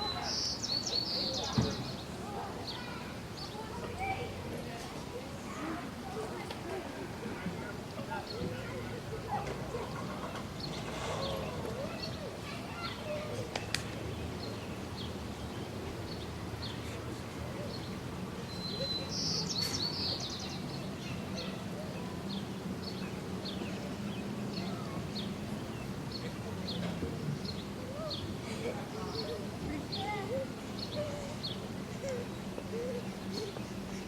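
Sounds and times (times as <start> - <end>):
small birds chirping: 0.0 - 4.2, 17.6 - 34.0.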